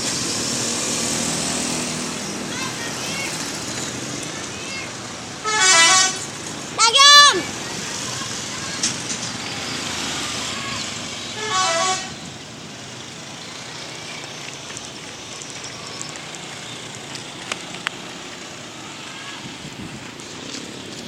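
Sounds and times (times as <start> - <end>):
traffic noise: 0.0 - 21.0
bus musical horn: 5.4 - 6.3, 11.4 - 12.2.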